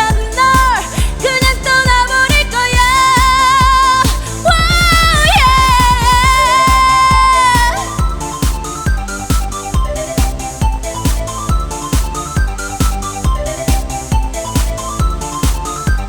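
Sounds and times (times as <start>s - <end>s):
woman singing: 0.0s - 8.1s
dance-pop backing track: 0.0s - 16.0s
fast drum roll: 0.0s - 16.0s.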